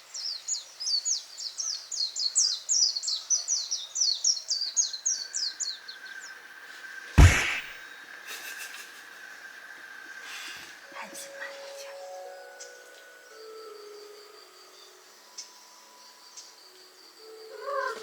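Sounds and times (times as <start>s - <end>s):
loud thump: 7.2s - 7.7s.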